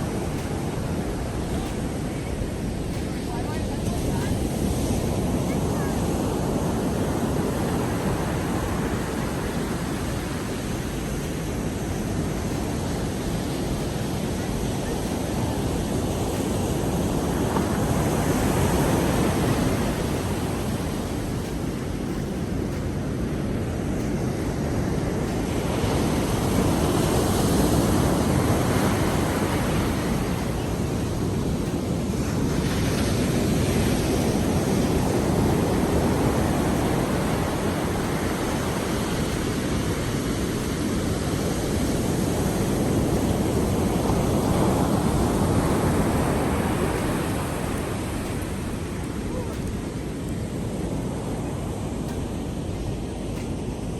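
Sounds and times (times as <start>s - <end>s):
heavy sea waves breaking: 0.0s - 53.9s.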